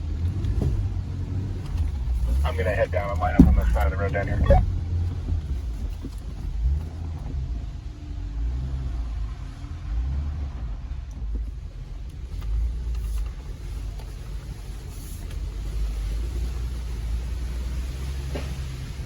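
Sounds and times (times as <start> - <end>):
engine low rumble from cab: 0.0 - 9.4.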